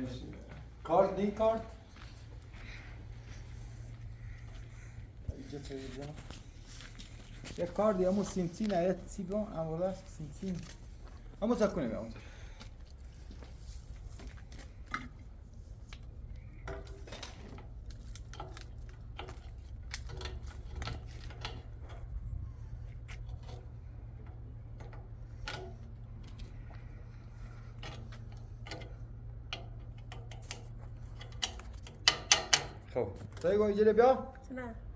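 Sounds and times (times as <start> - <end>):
steady low hum: 0.0 - 34.9
clinks and knocks of hard objects: 16.6 - 22.1.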